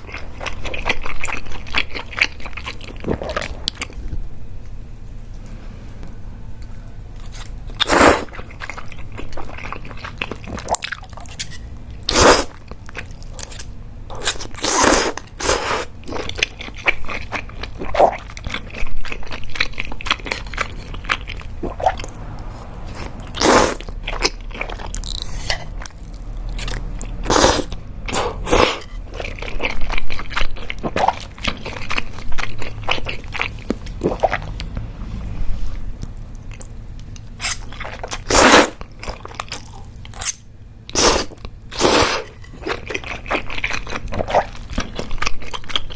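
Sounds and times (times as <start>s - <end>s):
wet chewing: 7.2s - 34.8s, 36.0s - 45.9s
noodle slurping: 12.1s - 12.6s, 23.3s - 24.8s, 27.2s - 32.1s, 38.2s - 38.8s, 40.9s - 42.4s.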